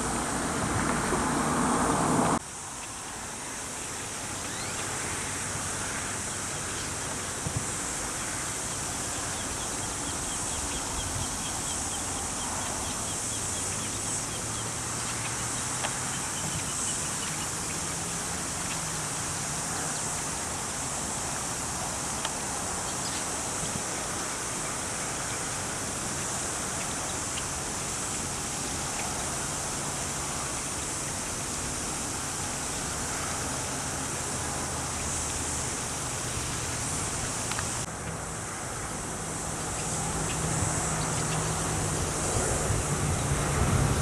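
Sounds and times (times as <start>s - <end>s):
loud rush of noise: 0.0s - 4.3s, 17.5s - 44.0s
steady high hiss: 0.0s - 44.0s
faint bird chirps: 4.4s - 4.9s.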